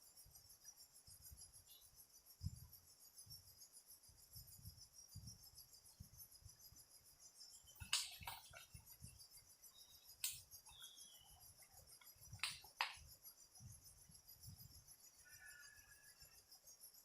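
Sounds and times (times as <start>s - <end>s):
high-pitched insect chorus: 0.0s - 17.0s
sharp clicks and light knocks: 7.8s - 8.8s, 10.2s - 10.9s, 12.0s - 13.1s.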